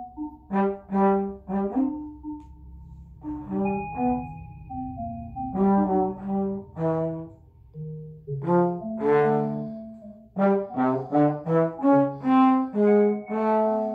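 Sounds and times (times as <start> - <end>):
electronic accompaniment: 0.0 - 13.9
trombone improvising: 0.5 - 2.2, 5.5 - 7.4, 8.4 - 13.9.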